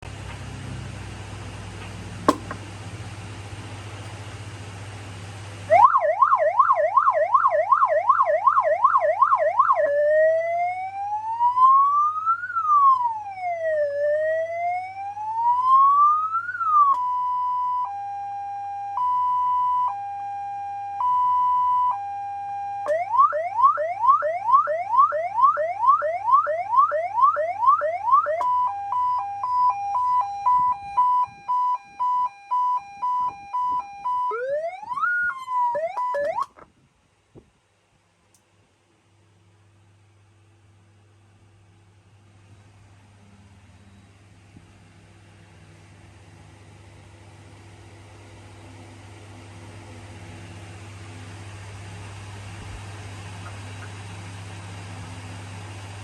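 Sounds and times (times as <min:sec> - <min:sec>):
electronic emergency vehicle siren: 0:05.7 - 0:36.6.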